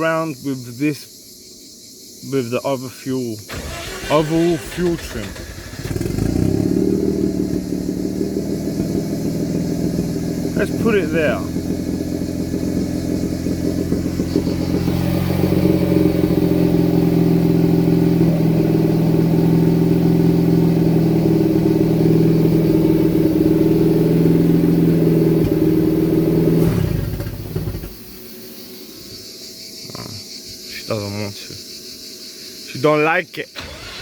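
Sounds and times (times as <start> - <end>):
car engine running: 3.5 - 28.9.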